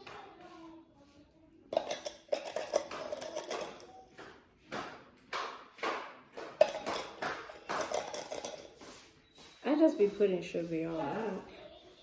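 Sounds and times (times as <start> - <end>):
spoon scraping in bowl: 1.7 - 4.0, 6.6 - 9.1.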